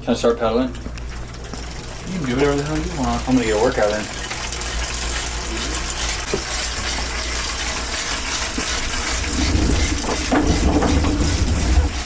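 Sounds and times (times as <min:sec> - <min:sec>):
bicycle trainer whirring: 0:01.0 - 0:12.0
deep hum: 0:08.8 - 0:12.0.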